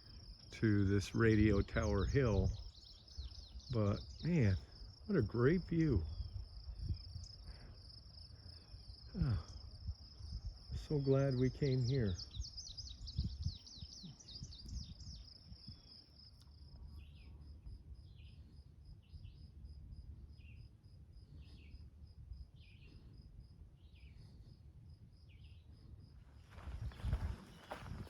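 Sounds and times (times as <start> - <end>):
bird chirping: 0.2 - 7.5, 10.2 - 24.6
low wind rumble: 1.1 - 28.0.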